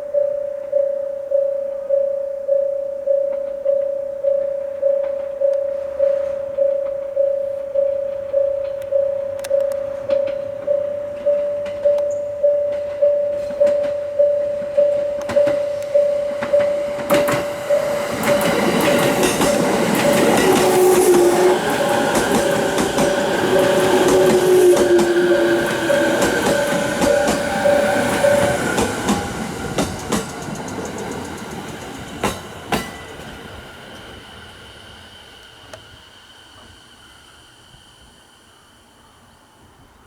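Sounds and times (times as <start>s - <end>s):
level crossing alarm: 0.0s - 29.9s
electric train passing: 0.0s - 40.0s
wheels clicking over rail joints: 8.1s - 34.1s.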